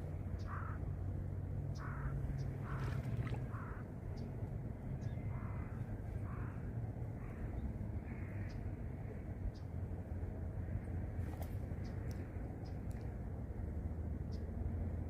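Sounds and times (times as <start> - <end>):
steady low rumble: 0.0 - 15.0
crow cawing: 0.4 - 0.8, 1.8 - 3.9, 5.3 - 7.4, 8.0 - 8.6.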